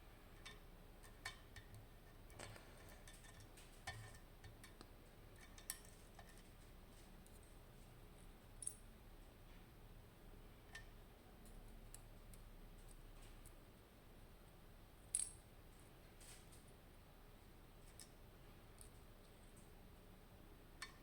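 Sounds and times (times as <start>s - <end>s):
small steel parts clinking: 15.1s - 15.4s.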